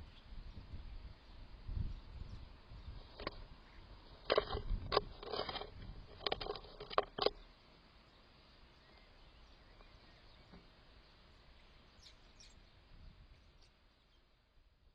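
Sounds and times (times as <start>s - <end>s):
faint high bird chirps: 7.3s - 14.4s.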